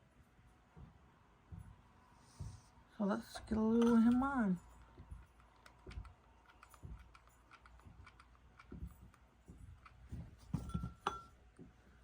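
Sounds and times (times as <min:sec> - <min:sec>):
light clicks and taps of handling: 0:03.7 - 0:11.8.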